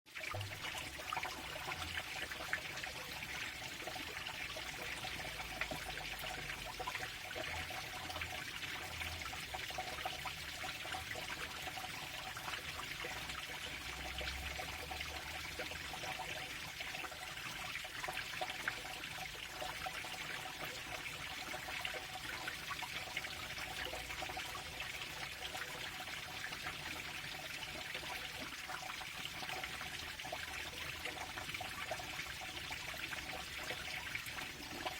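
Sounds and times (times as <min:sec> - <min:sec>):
water flowing and trickling: 0:00.1 - 0:34.9.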